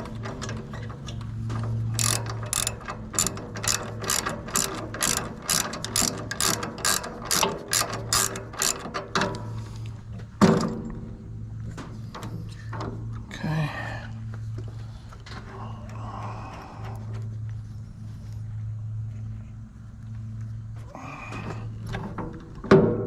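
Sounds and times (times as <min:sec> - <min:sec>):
socket ratchet clicking: 0:02.0 - 0:09.0.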